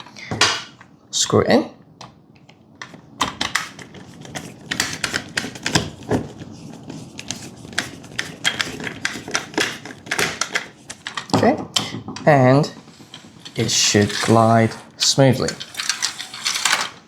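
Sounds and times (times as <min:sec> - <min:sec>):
plastic and metal parts clattering: 0:12.8 - 0:17.0.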